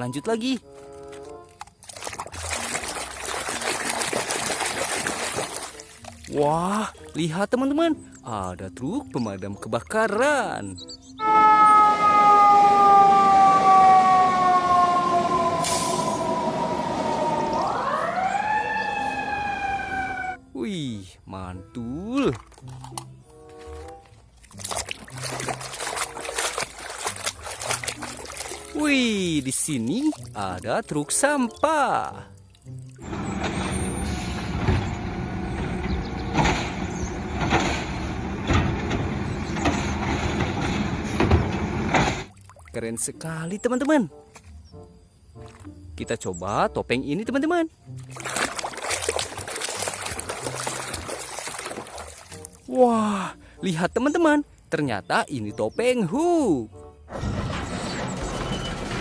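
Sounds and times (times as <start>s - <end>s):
toy siren wailing: 11.2s - 20.4s
truck engine running: 33.0s - 42.3s.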